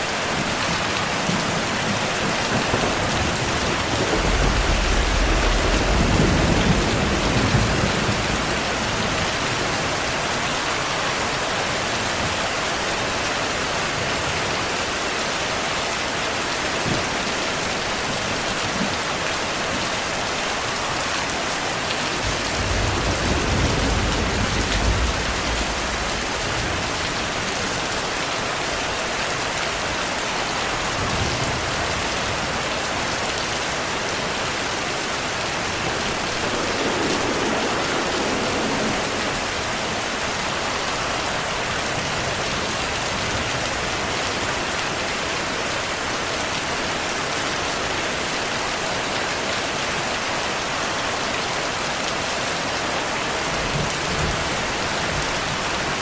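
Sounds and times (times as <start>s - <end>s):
heavy rain falling: 0.0s - 56.0s
distant thunder rumble: 0.2s - 10.0s, 22.1s - 28.1s, 34.3s - 43.9s.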